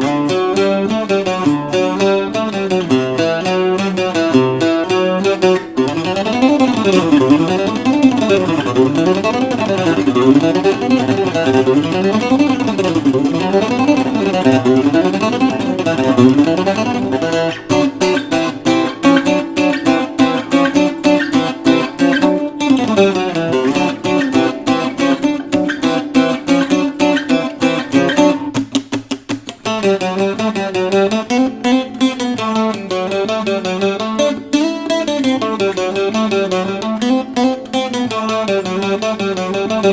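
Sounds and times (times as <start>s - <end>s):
guitar picking and strumming: 0.0s - 39.9s.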